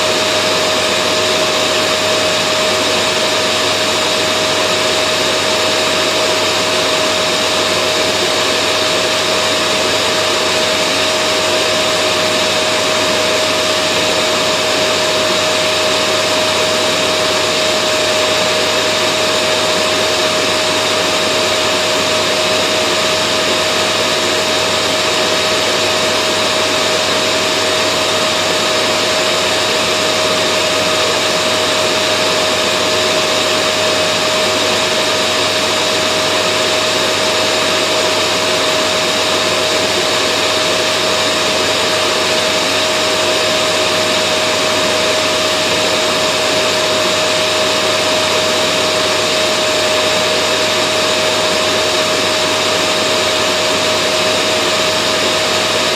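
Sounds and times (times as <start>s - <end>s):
vacuum cleaner running: 0.0s - 55.9s.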